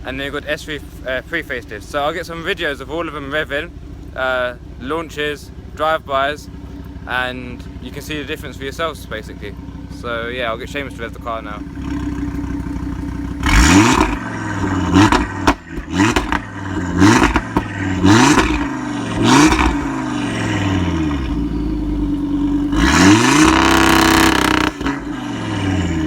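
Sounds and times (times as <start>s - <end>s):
car engine revving: 11.4s - 26.0s.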